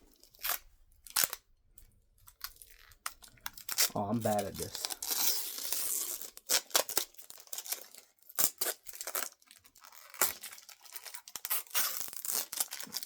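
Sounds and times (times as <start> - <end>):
plastic wrapping ripping: 0.1 - 1.4, 2.2 - 13.0
plastic crinkling: 2.2 - 13.0.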